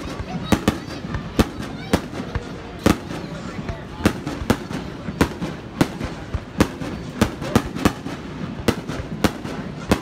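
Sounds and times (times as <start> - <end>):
steady background noise: 0.0 - 10.0.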